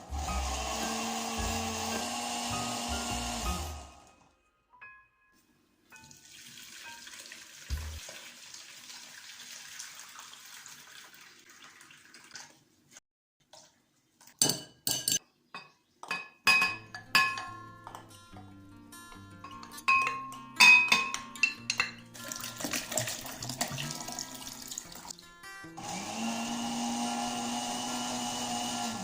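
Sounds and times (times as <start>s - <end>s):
liquid pouring: 6.0s - 12.6s, 22.2s - 25.1s
glass and dishes clinking: 14.4s - 18.5s, 19.4s - 22.1s.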